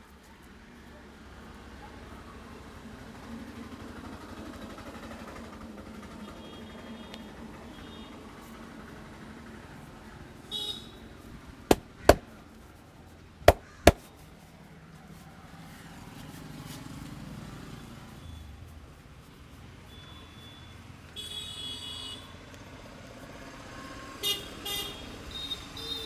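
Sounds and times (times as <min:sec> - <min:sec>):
light street traffic: 0:00.0 - 0:26.0
sharp hand slaps: 0:11.7 - 0:12.2.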